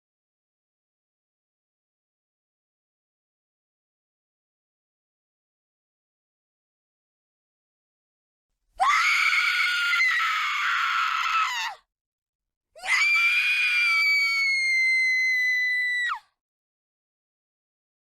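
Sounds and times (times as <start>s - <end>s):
woman screaming: 8.8s - 11.8s.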